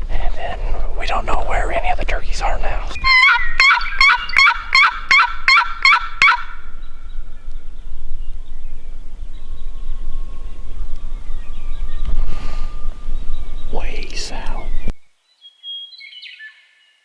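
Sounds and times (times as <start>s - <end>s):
quiet outdoor background: 0.0s - 17.0s
turkey yelping: 3.0s - 6.6s.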